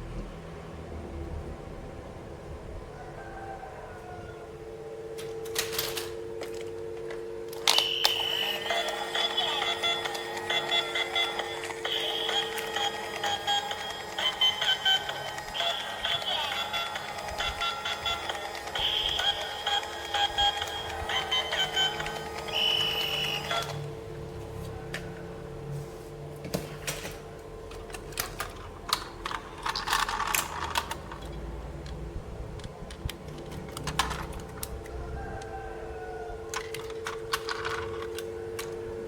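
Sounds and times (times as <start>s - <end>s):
electronic toy tune: 7.6s - 23.9s
plastic toy pieces clicking: 27.9s - 32.0s, 32.6s - 34.9s, 36.5s - 38.8s.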